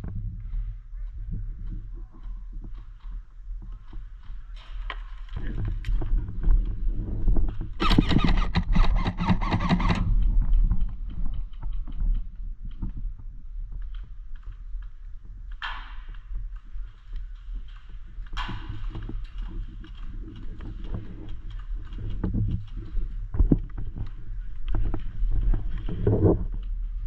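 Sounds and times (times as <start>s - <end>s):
steady low rumble: 0.0s - 7.8s
footsteps: 0.0s - 8.0s, 9.2s - 27.0s.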